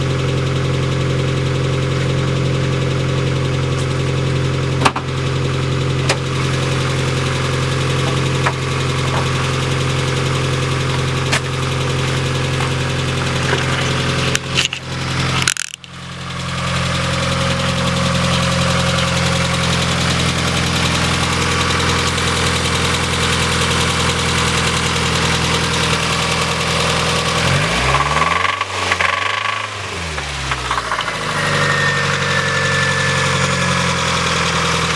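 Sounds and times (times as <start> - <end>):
car engine with rod knock: 4.8 - 5.2, 6.0 - 6.3, 8.0 - 9.5, 10.9 - 16.0, 27.9 - 31.4.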